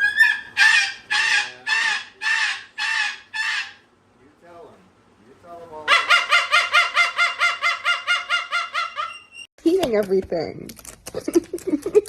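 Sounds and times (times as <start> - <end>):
parrot squawking: 0.0 - 3.9, 5.8 - 9.5.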